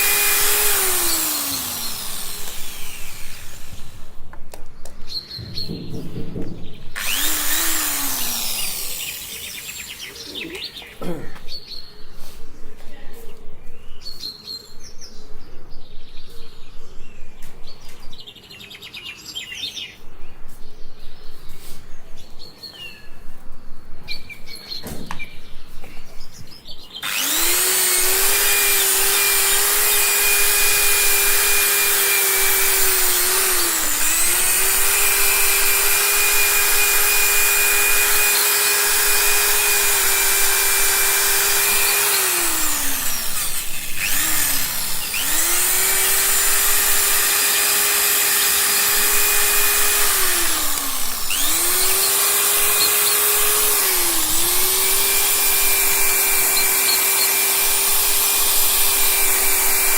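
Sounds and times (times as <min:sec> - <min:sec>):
electric power tool whining: 0:00.0 - 0:04.3, 0:06.8 - 0:11.2, 0:27.0 - 0:59.9
birds chirping: 0:04.7 - 0:58.0.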